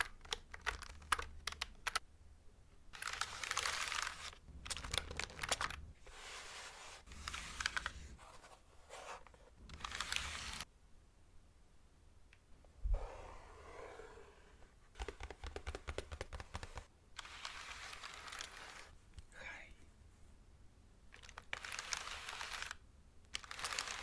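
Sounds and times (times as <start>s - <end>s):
mechanical keyboard clicking: 0.0s - 2.0s
hands brushing: 6.0s - 10.7s.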